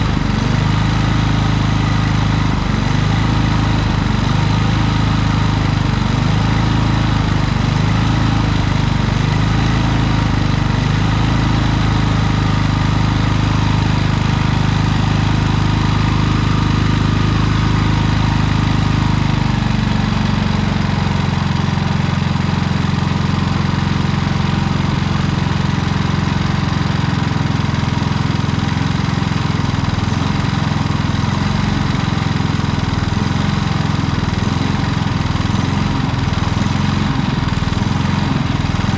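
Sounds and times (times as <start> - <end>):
generator engine surging: 0.0 - 38.9.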